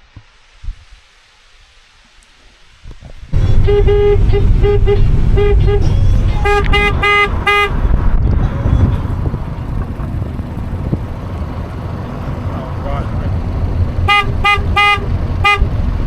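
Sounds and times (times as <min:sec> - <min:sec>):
low rumble: 0:02.9 - 0:16.0
vehicle horn short toots: 0:03.4 - 0:09.2, 0:14.0 - 0:15.8.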